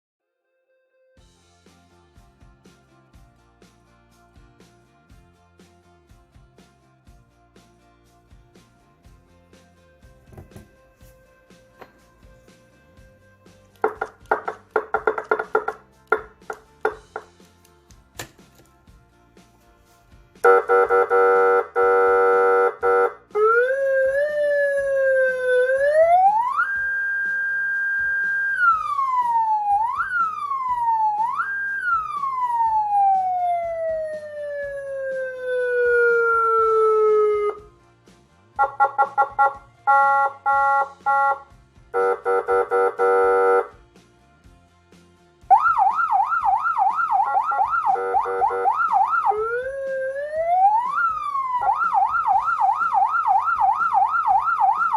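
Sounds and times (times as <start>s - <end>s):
electronic siren tones: 23.4s - 37.7s, 45.5s - 54.9s.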